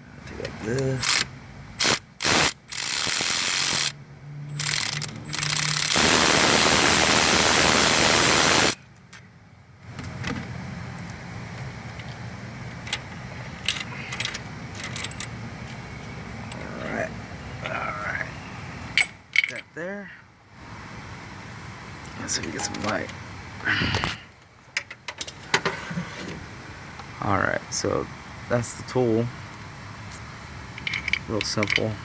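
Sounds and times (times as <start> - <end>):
pneumatic tool running: 1.0 - 8.8
loud air hiss: 1.8 - 3.2, 5.9 - 8.8
metallic clicks from handling parts: 4.5 - 6.0, 12.8 - 15.4, 19.0 - 19.7, 29.5 - 31.9.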